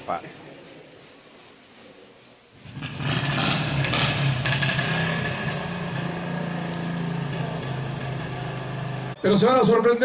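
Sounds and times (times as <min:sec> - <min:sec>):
engine running steadily: 0:02.6 - 0:09.2.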